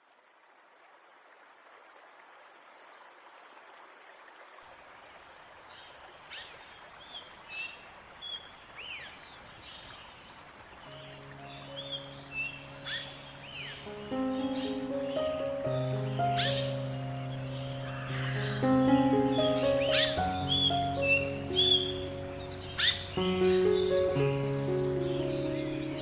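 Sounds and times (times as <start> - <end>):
flowing water: 0.0 - 26.0
birds chirping: 6.3 - 26.0.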